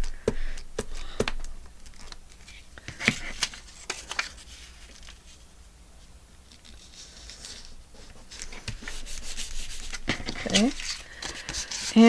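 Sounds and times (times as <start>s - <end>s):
paper rubbing: 6.6s - 12.0s.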